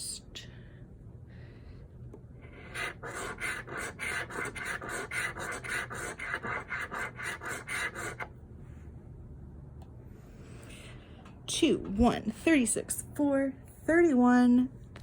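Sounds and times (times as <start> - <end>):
lottery ticket being scratched: 2.5 - 8.3.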